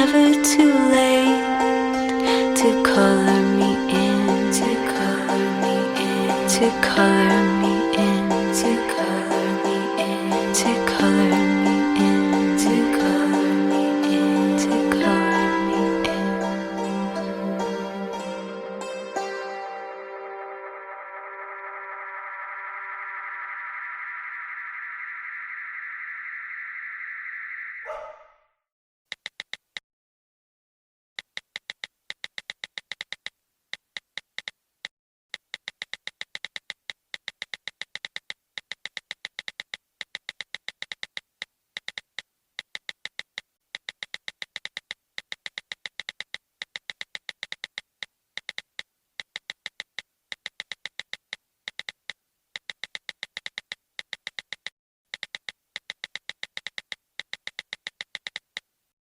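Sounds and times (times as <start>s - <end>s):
electronic music of rapid clicks: 31.2s - 33.3s, 35.3s - 58.7s.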